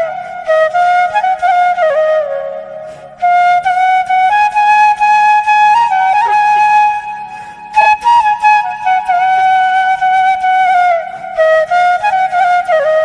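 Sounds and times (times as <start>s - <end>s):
solo flute melody: 0.0s - 13.0s.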